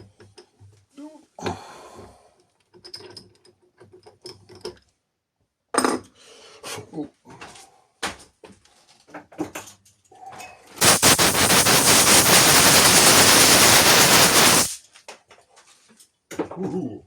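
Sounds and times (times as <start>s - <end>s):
compressed air blast: 10.8s - 14.8s.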